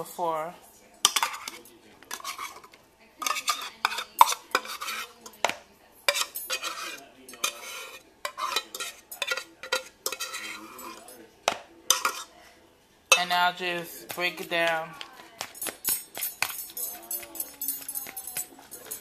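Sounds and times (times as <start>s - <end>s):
fork scraping metal can: 1.2s - 5.2s, 6.1s - 11.0s.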